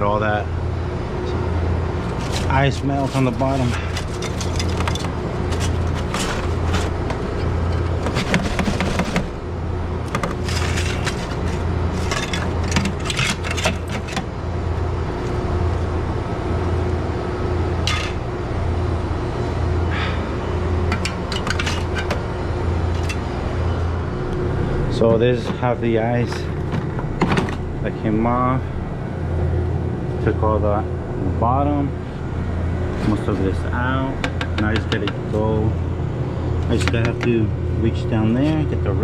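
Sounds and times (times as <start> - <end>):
ice scraping and cracking on metal: 2.0 - 9.4, 10.1 - 14.3, 21.3 - 22.1, 32.9 - 33.7.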